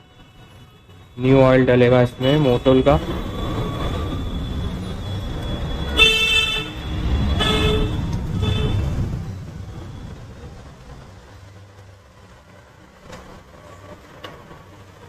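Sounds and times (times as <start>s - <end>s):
road traffic rumble: 0.0s - 15.0s
vehicle horns honking: 5.9s - 9.0s.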